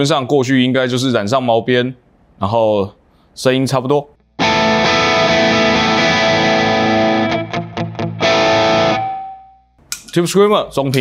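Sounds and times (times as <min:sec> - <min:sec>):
overdriven electric guitar chords: 0:04.2 - 0:09.5.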